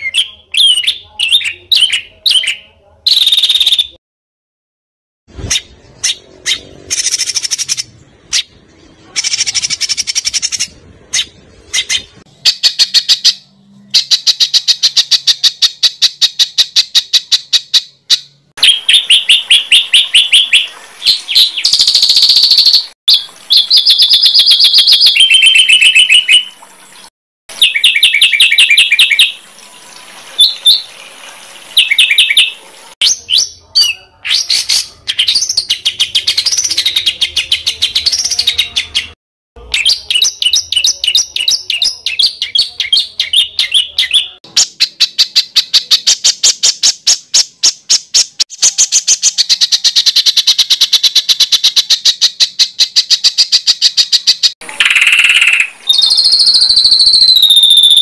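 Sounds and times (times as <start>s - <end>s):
songbird singing: 0.0s - 4.0s, 5.4s - 26.7s, 27.5s - 29.4s, 31.8s - 58.0s.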